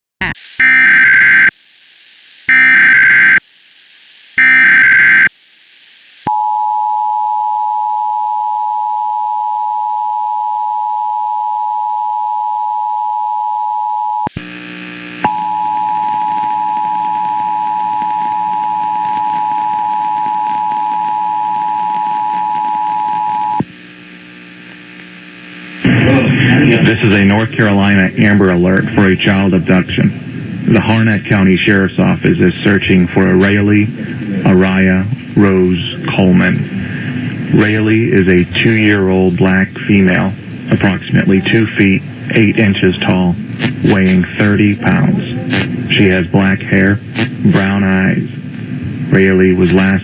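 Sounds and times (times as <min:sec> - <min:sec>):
screeching data tones: 0:00.2 - 0:01.5, 0:02.5 - 0:03.4, 0:04.4 - 0:05.3
low buzz: 0:14.3 - 0:49.6.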